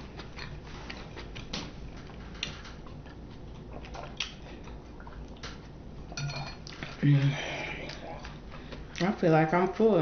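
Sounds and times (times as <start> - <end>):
chewing and handling food clicks: 0.0 - 5.8.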